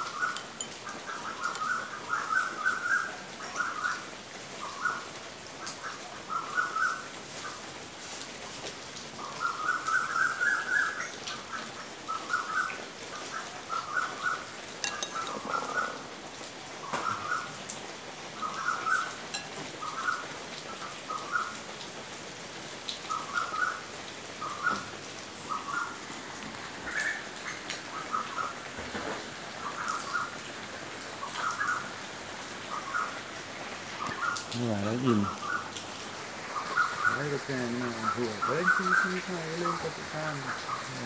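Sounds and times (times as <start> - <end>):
rain falling: 0.0 - 41.0
bird chirping: 36.6 - 39.9.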